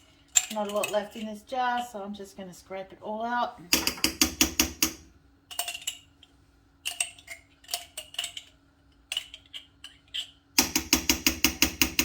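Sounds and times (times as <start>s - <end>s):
spoon tapping stirring in pot: 10.6s - 12.0s.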